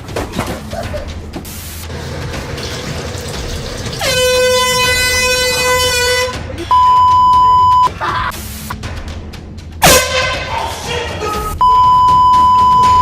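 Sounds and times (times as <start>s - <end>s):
air horn blast: 4.0s - 6.6s, 9.8s - 10.6s.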